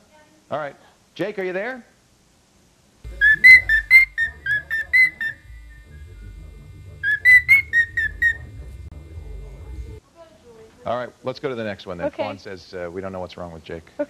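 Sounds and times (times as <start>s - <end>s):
cockatiel whistling: 3.1s - 8.5s.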